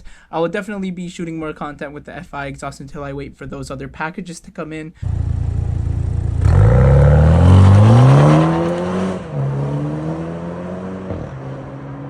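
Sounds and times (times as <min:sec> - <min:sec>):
car engine accelerating: 0:05.0 - 0:12.0.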